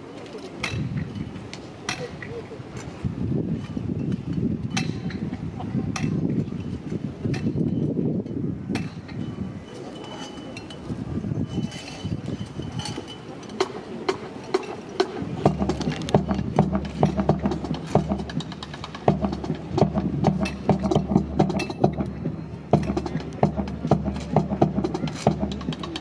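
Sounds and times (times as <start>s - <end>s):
rifles and hands clacking: 12.9s - 22.2s, 22.8s - 26.0s.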